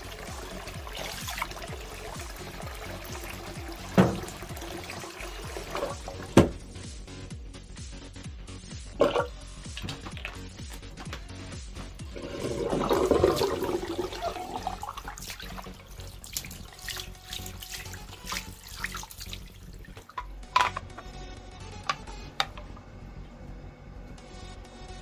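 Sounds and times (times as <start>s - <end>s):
tap water running into sink: 0.0s - 6.6s, 9.0s - 10.8s, 12.0s - 20.8s.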